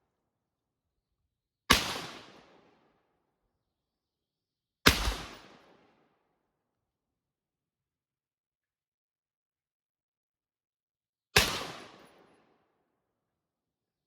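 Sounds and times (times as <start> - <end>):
rifle shots: 1.7 - 2.4, 4.9 - 5.6.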